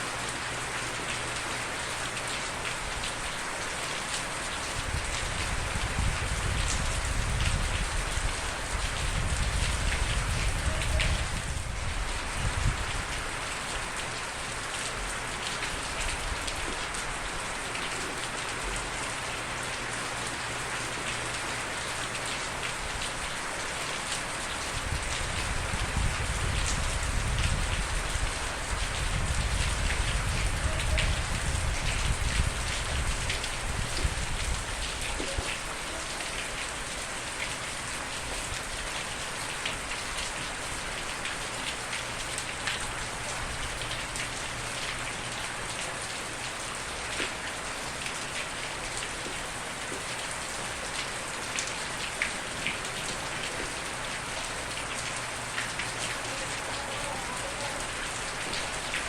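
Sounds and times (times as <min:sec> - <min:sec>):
heavy rain on hard surface: 0:00.0 - 0:59.0.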